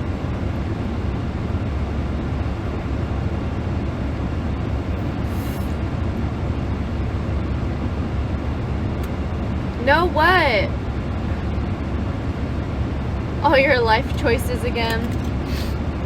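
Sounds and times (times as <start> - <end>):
truck cabin rumble: 7.7 - 16.0.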